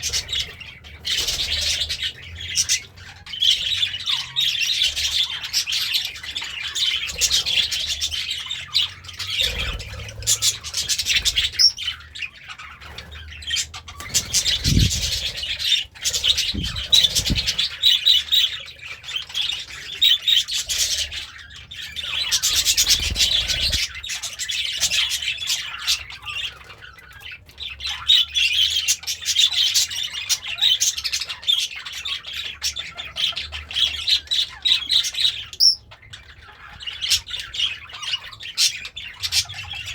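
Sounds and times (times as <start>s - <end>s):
budgerigar chirping and squawking: 0.0s - 39.9s
dull low thumps: 16.5s - 17.4s.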